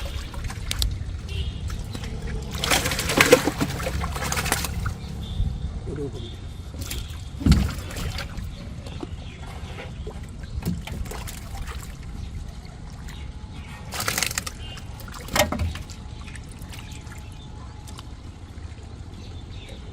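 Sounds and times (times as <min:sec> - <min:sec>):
water sloshing and splashing: 0:00.0 - 0:19.9.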